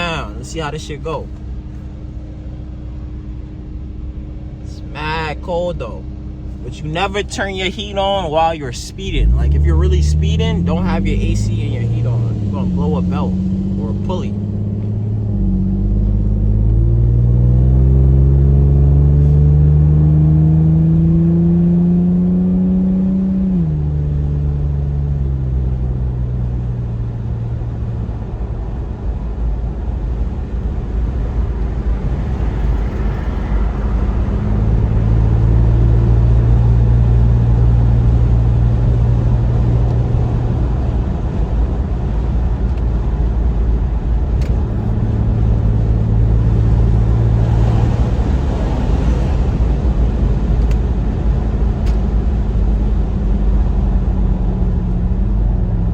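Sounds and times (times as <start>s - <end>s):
car engine accelerating: 0.0s - 55.9s.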